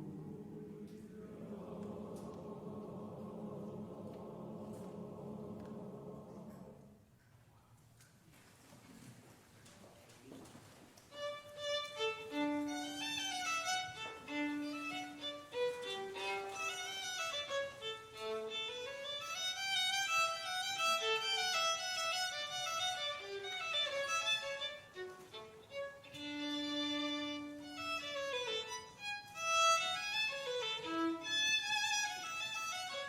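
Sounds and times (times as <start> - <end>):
violin playing bowed melody: 11.1 - 33.0.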